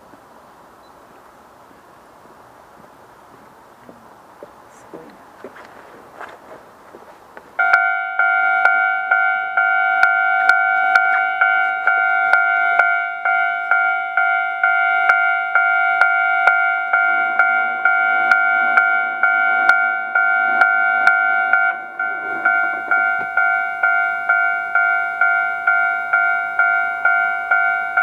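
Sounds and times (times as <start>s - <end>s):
level-crossing alarm bell clanging: 7.6s - 28.0s
low hum: 7.6s - 28.0s.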